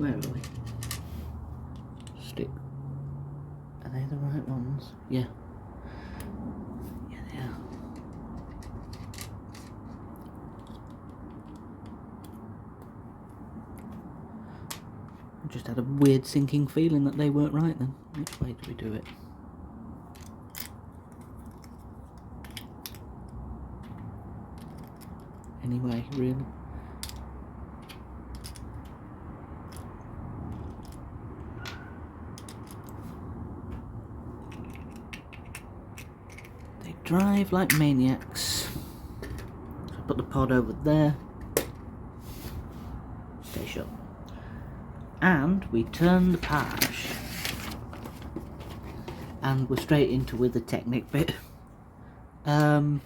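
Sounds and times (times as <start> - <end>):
steady low rumble: 0.0 - 15.9
road traffic rumble: 0.0 - 53.0
plastic pieces clicking: 7.7 - 12.9, 23.8 - 26.2, 27.8 - 29.0, 34.4 - 37.8
plastic pieces clicking together: 23.8 - 25.5, 34.4 - 37.8.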